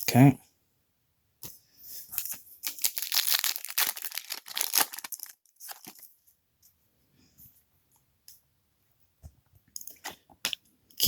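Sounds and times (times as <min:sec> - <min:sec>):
foil wrapper crinkling: 0:02.2 - 0:06.1.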